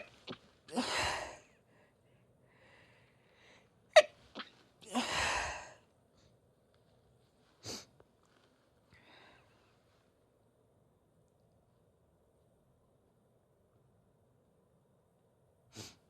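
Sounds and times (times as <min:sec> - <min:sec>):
woman sneezing: 0:00.0 - 0:01.4, 0:04.0 - 0:05.6.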